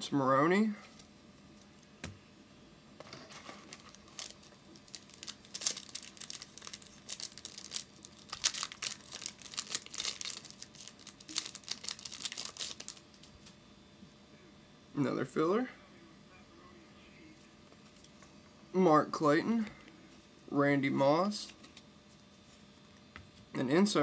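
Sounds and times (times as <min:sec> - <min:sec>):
wrapper tearing and crinkling: 0:03.3 - 0:13.4.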